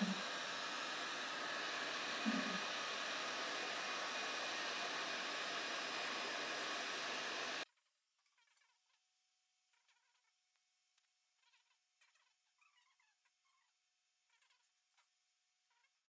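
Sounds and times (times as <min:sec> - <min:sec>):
hot air gun airflow hiss: 0:00.0 - 0:07.6.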